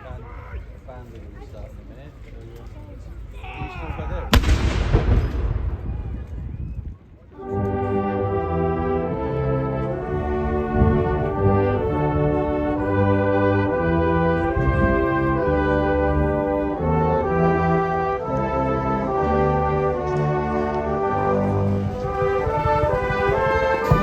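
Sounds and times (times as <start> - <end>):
sharp bang: 4.4 - 6.7
brass band playing: 7.4 - 24.0.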